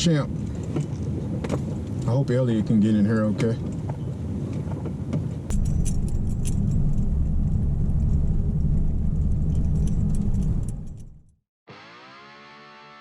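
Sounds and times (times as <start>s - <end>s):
truck engine and tyres rumbling: 0.0s - 11.4s
clinks and rattles: 5.5s - 11.3s.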